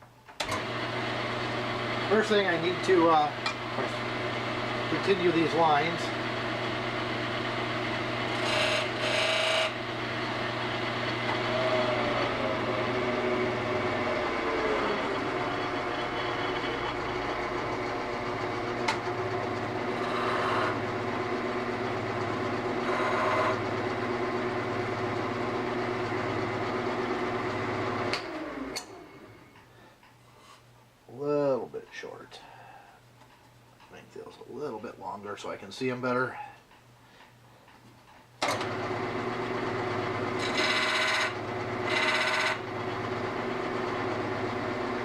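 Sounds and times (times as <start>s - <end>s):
wood lathe motor hum: 0.4s - 29.5s, 38.6s - 45.0s
tool scratching turning wood: 1.3s - 20.8s, 22.8s - 23.6s, 40.3s - 42.6s.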